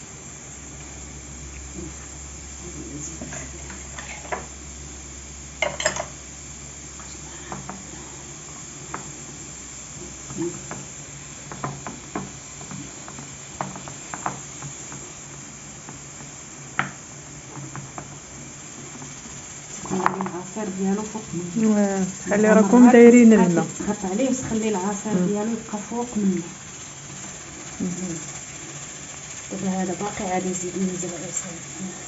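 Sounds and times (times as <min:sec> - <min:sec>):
kitchen utensils clinking: 0:05.6 - 0:06.2.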